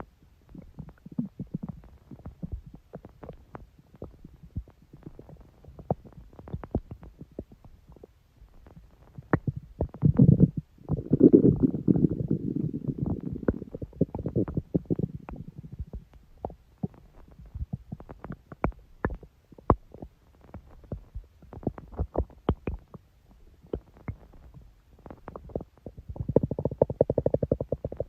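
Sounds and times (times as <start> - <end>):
stomach growling and gurgling: 0.0 - 28.0.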